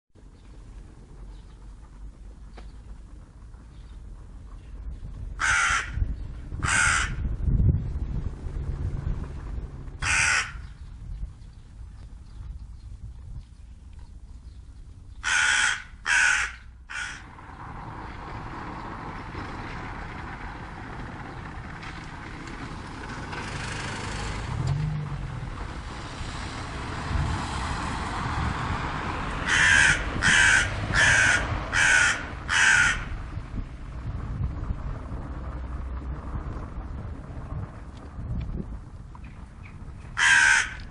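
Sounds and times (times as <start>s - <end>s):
crow cawing: 5.4s - 7.2s, 10.0s - 10.7s, 15.2s - 17.3s, 29.4s - 33.2s, 40.2s - 40.9s.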